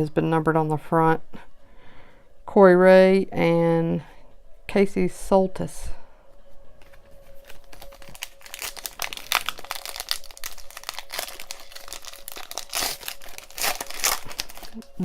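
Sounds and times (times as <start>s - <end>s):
plastic wrapper crinkling: 6.8s - 15.0s.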